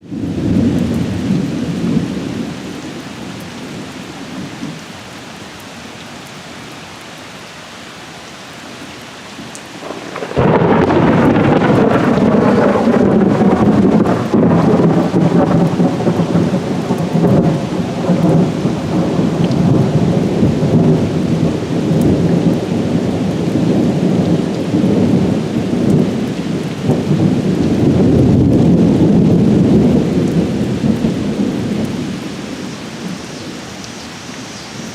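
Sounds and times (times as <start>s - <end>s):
thunder clap and rumble: 0.0s - 2.5s, 9.8s - 33.2s
rain falling: 0.0s - 34.9s.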